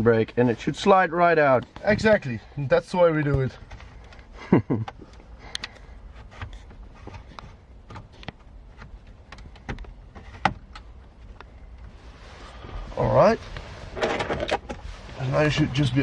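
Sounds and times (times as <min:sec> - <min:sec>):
light clicks and knocks: 0:03.2 - 0:11.9.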